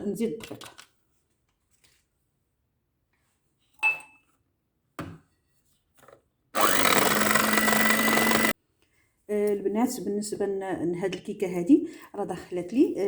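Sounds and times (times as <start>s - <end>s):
electric mixer motor hum: 6.6s - 8.5s.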